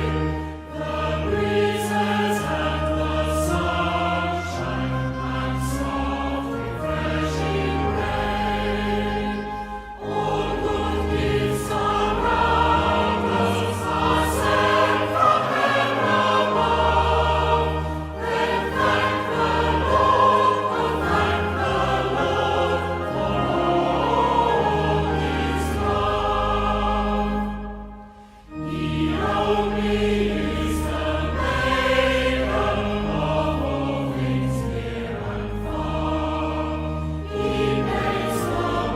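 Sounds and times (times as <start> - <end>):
voices singing a hymn: 0.0 - 38.9.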